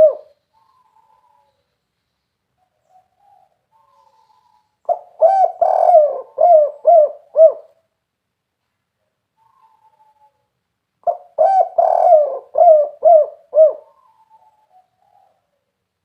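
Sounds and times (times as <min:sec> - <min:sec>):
dove cooing: 0:00.0 - 0:01.6, 0:02.6 - 0:07.8, 0:11.0 - 0:15.7.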